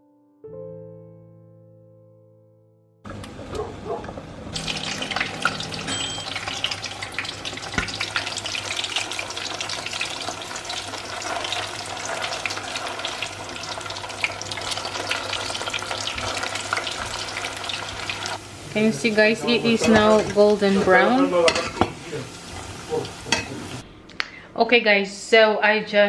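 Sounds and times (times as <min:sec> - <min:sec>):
meatballs sizzling in hot oil: 0:04.5 - 0:23.8.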